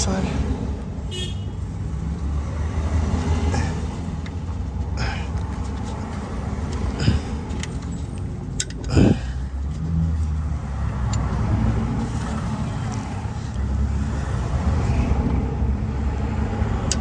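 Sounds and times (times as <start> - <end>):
low vehicle rumble: 0.0 - 17.0
metallic clicks of hand tools: 7.5 - 9.1.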